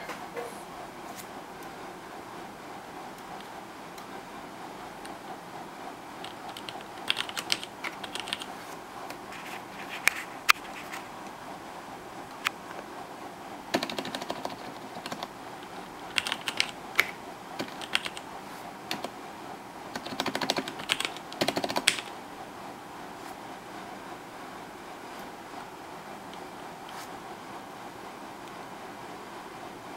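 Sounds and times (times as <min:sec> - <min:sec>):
mechanical keyboard keys clacking: 0:06.2 - 0:08.6, 0:13.7 - 0:18.2, 0:18.9 - 0:19.2, 0:19.9 - 0:22.2.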